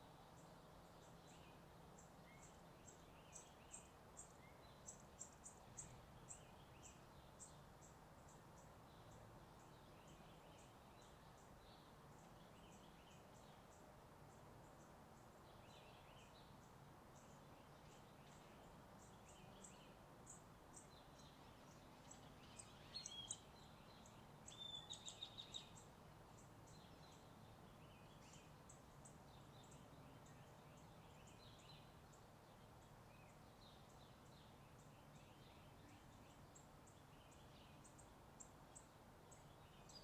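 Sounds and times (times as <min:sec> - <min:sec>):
small birds chirping: 0:00.0 - 0:40.0.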